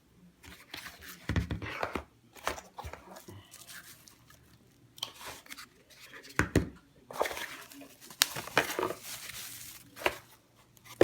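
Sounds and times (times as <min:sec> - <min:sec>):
packaging rustling and crinkling: 0:01.8 - 0:06.4, 0:07.1 - 0:11.0
packaging clicks and knocks: 0:07.2 - 0:09.4.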